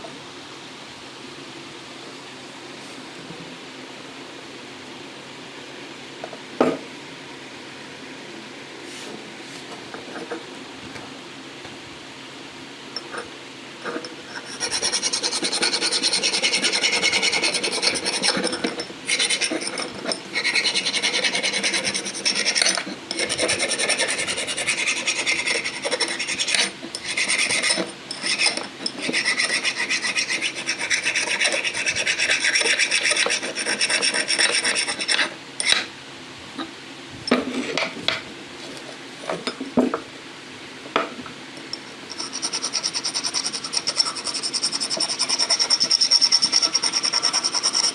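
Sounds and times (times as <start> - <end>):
rasping of part being filed: 13.8 - 35.9, 42.1 - 47.9.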